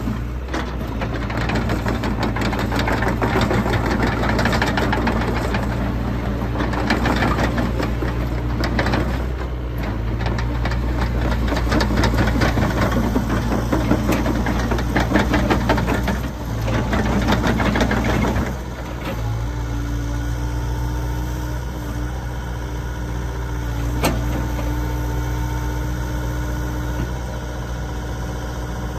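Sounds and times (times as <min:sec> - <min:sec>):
excavator diesel engine running: 0:00.0 - 0:28.9
heavy clattering and rattling: 0:00.5 - 0:19.2.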